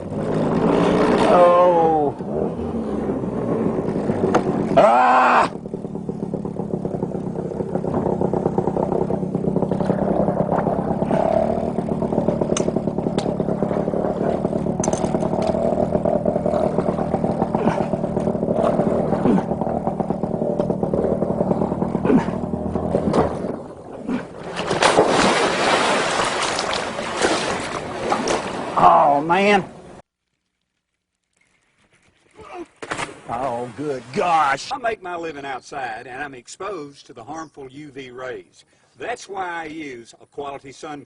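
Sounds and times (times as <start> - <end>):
motor engine running: 0.0 - 29.1
knocks and scraping: 5.8 - 28.7.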